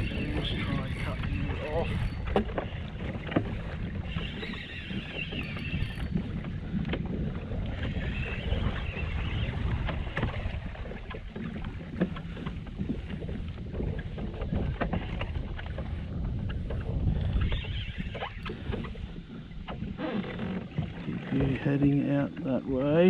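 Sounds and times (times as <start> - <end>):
wind buffeting microphone: 0.0 - 23.0.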